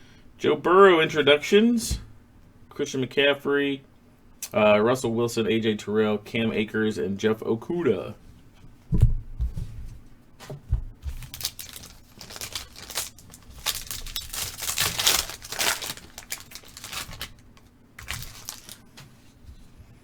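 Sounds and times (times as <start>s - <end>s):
wrapper crinkling and tearing: 11.1s - 18.8s.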